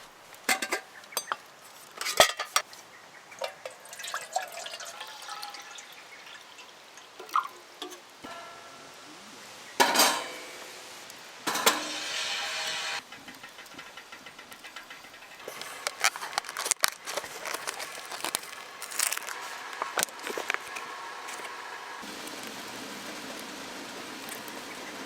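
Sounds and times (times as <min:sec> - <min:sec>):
water pouring: 0:03.3 - 0:08.6, 0:15.4 - 0:25.0.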